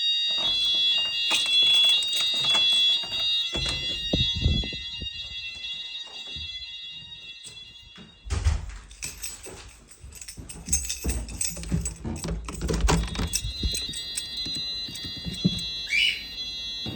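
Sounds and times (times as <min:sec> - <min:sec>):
fire alarm high-pitched tone: 0:00.0 - 0:16.9
handling noise clatter and rustle: 0:00.3 - 0:05.4, 0:08.9 - 0:15.8.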